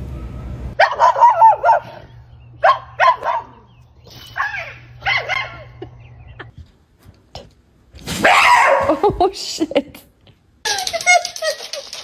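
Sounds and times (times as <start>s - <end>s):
dog wavering calls: 8.2s - 9.0s.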